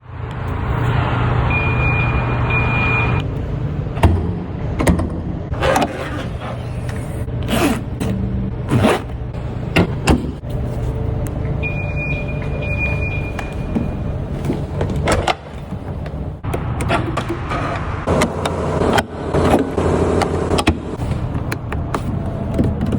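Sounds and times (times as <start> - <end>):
high-pitched tone: 11.4 - 14.1.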